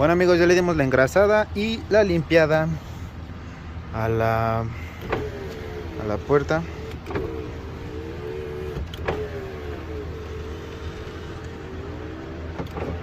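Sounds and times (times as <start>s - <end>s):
power window motor whining: 4.4s - 13.0s
window motor stopping click: 5.0s - 13.0s.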